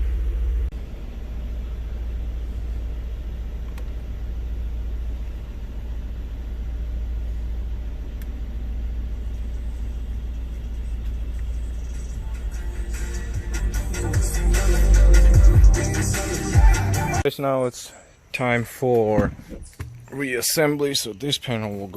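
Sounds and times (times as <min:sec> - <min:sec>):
deep low rumble: 0:00.0 - 0:03.5.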